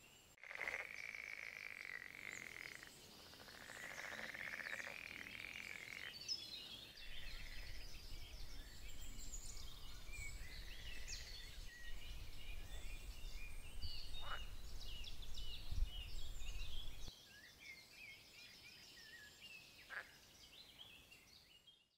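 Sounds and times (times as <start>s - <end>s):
birds chirping and trilling: 0.0s - 21.8s
frog croaking: 0.4s - 6.2s, 14.2s - 14.6s.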